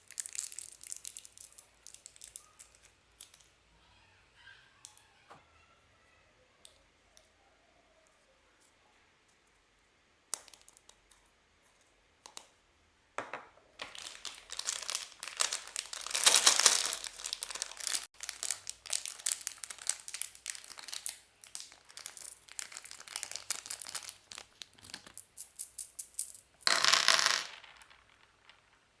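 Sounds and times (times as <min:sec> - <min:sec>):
wrapper ripping: 0:00.0 - 0:02.7, 0:13.8 - 0:25.2
plastic packaging crackling: 0:00.0 - 0:03.4, 0:13.8 - 0:26.2.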